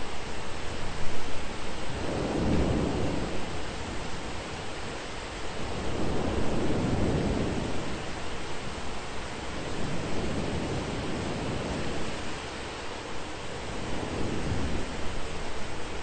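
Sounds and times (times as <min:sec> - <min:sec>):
rain hissing: 0:00.0 - 0:16.0
rolling thunder: 0:01.9 - 0:04.9, 0:05.6 - 0:08.6, 0:09.4 - 0:12.4, 0:13.6 - 0:15.4.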